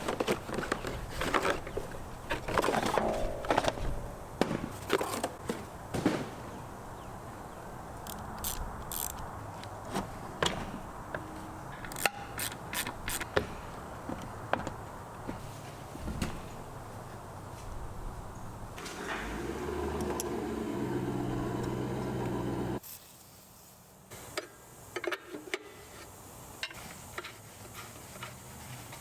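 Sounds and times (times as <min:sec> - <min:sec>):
hand tools clicking and knocking: 0:10.4 - 0:13.5.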